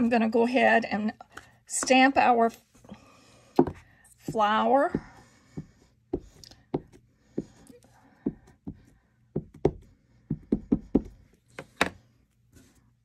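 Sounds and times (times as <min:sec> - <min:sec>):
stamp knocking on ink pad: 0:09.4 - 0:11.2.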